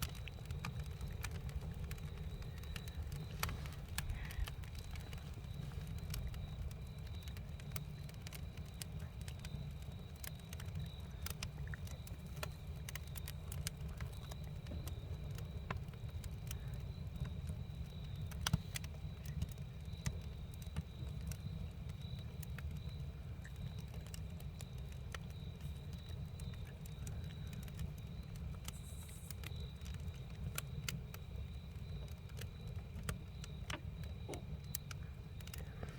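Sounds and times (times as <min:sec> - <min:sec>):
steady low rumble: 0:00.0 - 0:07.8
campfire crackling and popping: 0:00.0 - 0:35.9.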